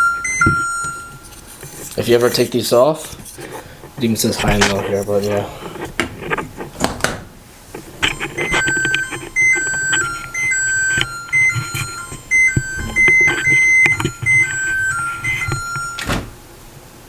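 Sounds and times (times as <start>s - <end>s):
electronic beeper melody: 12.3s - 14.1s.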